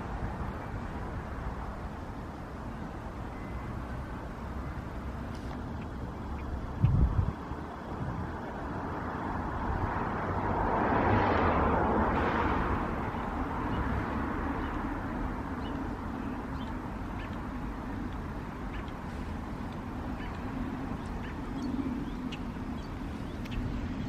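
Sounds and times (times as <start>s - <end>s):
wind rumbling on microphone: 5.3s - 24.0s.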